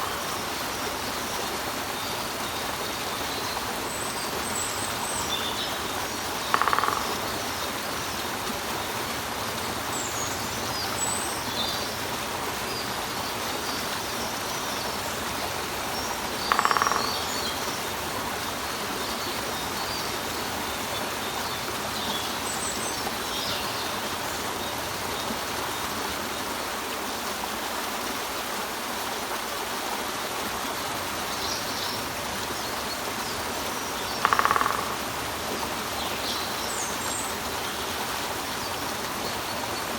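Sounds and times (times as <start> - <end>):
woodpecker calls: 4.5 - 9.0, 13.3 - 18.2, 33.9 - 35.4
small birds chirping: 15.9 - 17.9.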